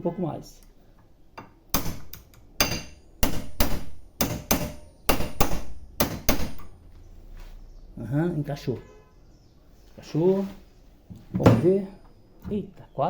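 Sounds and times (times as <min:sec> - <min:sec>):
hammer striking bearing: 0:01.4 - 0:06.8.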